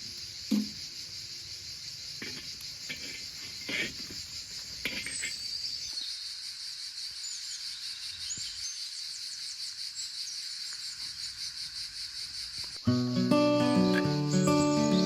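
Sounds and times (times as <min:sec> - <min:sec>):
crickets chirping: 0:00.0 - 0:15.0
bird chirps: 0:07.1 - 0:15.0.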